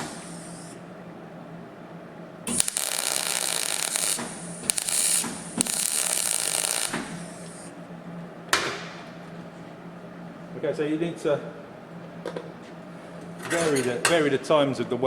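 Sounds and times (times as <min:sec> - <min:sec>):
welding arc crackling: 0:02.5 - 0:07.7.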